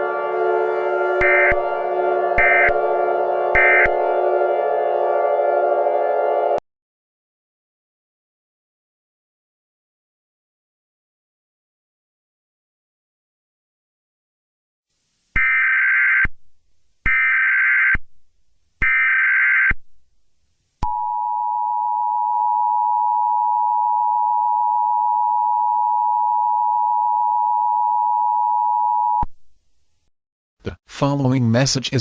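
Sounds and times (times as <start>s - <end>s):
steady two-tone attention signal: 0.1s - 5.2s.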